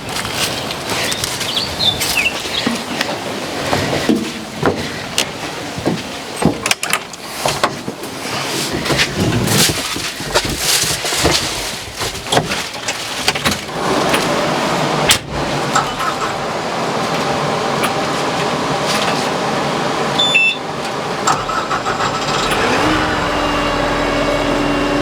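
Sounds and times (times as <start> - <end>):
diesel tractor engine running: 12.8 - 25.0.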